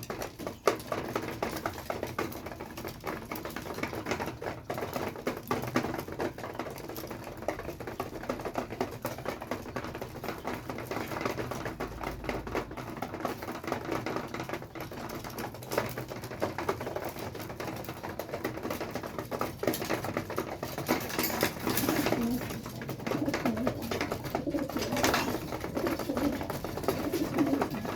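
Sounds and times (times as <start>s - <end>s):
pigeons pecking at feed: 0.0s - 27.9s
pigeons cooing: 21.1s - 27.9s.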